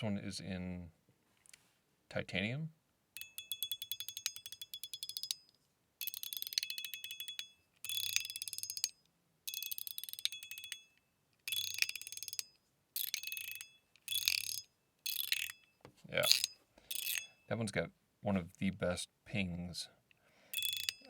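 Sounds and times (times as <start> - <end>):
ringing metallic ping: 3.2 - 12.5
fidget slider detent clicks: 6.0 - 15.6, 16.3 - 17.3, 20.6 - 21.0.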